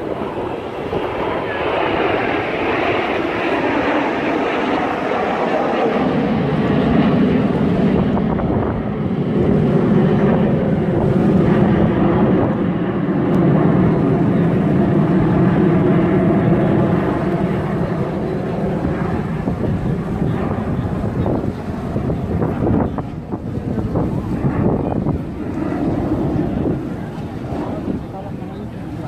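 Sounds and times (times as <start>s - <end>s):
aircraft engine flying over: 0.0s - 29.0s.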